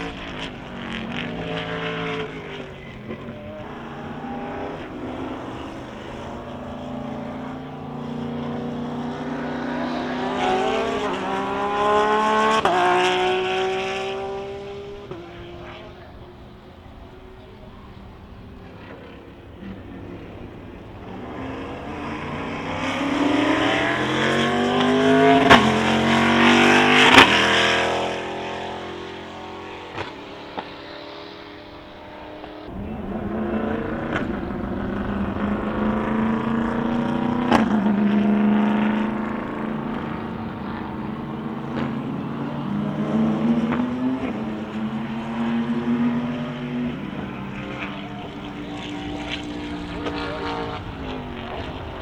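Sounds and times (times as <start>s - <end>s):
race car engines passing: 0.0s - 52.0s.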